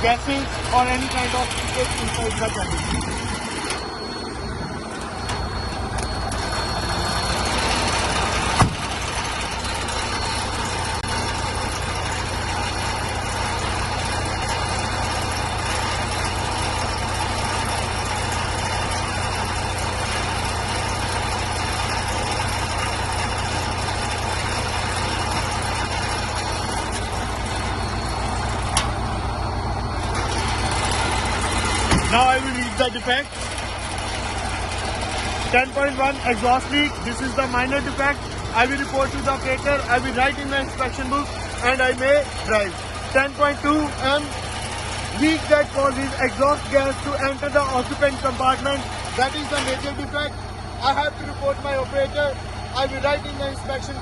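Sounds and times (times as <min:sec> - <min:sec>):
diesel engine idling: 0:00.0 - 0:54.0
sharp thump: 0:08.5 - 0:08.9, 0:31.8 - 0:32.1.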